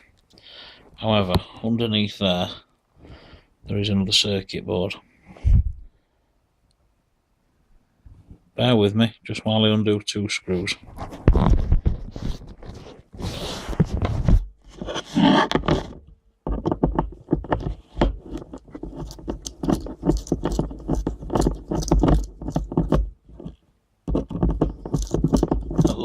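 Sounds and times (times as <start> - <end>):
screwdriver scraping and clicking: 14.8 - 26.0.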